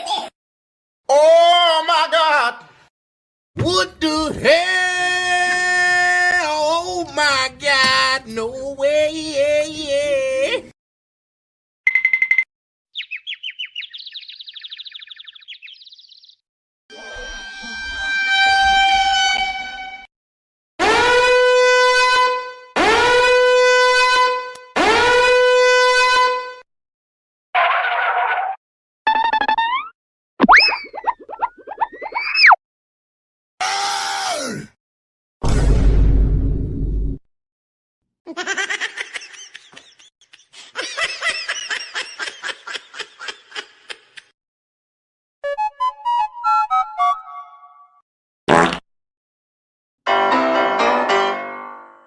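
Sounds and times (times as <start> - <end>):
person laughing high-pitched: 38.3 - 44.3.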